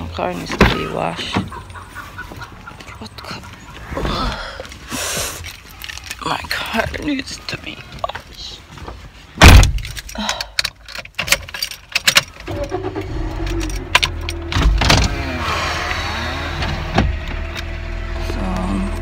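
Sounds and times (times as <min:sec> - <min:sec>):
keys rattling and clicking: 0:05.2 - 0:06.8, 0:09.8 - 0:12.7
loud thump: 0:09.4 - 0:09.8
car engine starting and running: 0:09.5 - 0:19.0.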